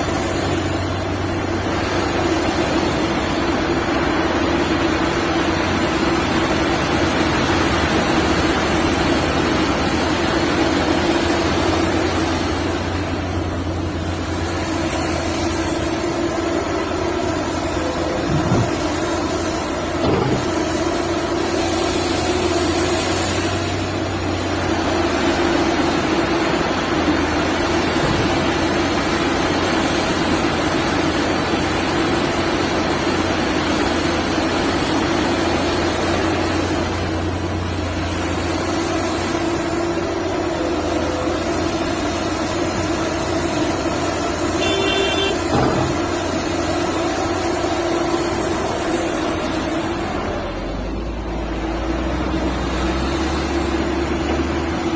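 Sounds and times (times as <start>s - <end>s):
excavator diesel engine running: 0.0s - 54.9s
short knocks: 18.2s - 18.8s, 20.0s - 20.6s, 45.4s - 46.2s.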